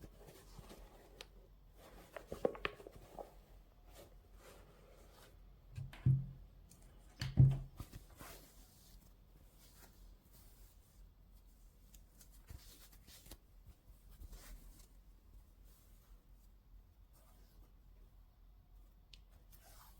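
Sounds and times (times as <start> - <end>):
rustling and handling taps: 2.0 - 3.4, 5.8 - 8.0.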